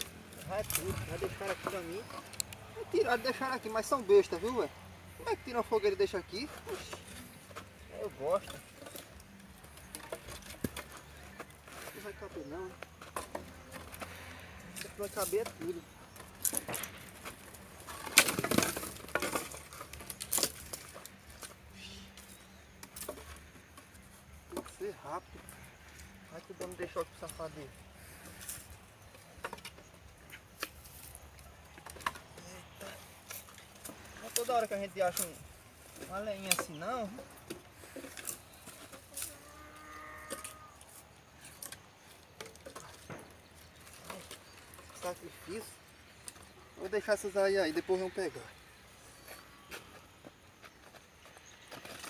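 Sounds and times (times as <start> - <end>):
firewood knocking and clattering: 0.0 - 2.8, 6.3 - 12.1, 12.7 - 26.8, 27.8 - 39.3, 41.4 - 46.5
firewood knocking together: 12.8 - 21.5, 29.1 - 32.5.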